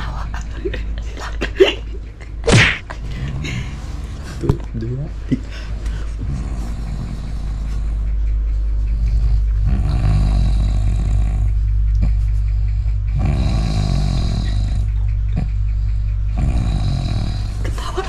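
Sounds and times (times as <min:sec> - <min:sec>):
steady low hum: 0:00.0 - 0:18.0
man snoring heavily: 0:06.2 - 0:08.0, 0:09.1 - 0:11.6, 0:13.1 - 0:15.0, 0:16.3 - 0:17.8.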